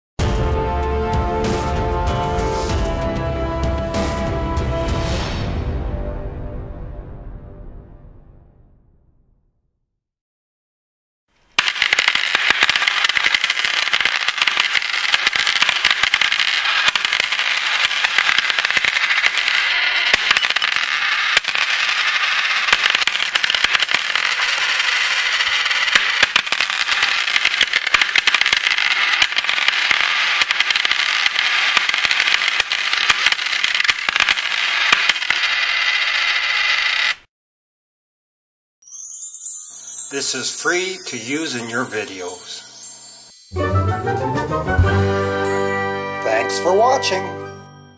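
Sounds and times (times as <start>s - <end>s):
coins clinking: 11.5s - 37.2s, 38.8s - 43.8s.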